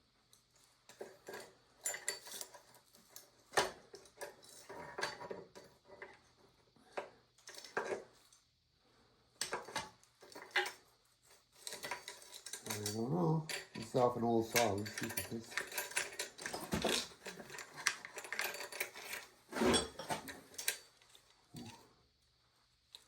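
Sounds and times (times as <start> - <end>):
chainsaw chain clanking: 11.7 - 20.8.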